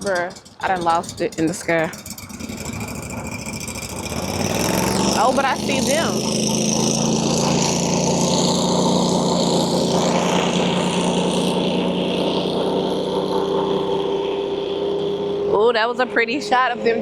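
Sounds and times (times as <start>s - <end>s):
engine humming with whine: 0.0s - 17.0s.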